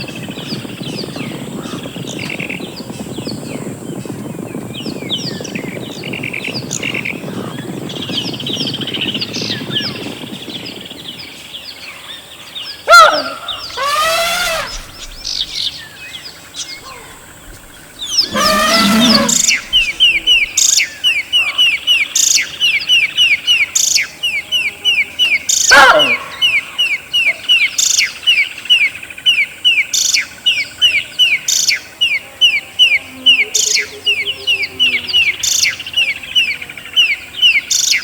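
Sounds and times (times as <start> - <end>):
wild birds chirping: 0.0 - 38.0
animal call of rising notes: 13.6 - 15.7, 16.8 - 20.5
low rumbling background: 16.8 - 20.6.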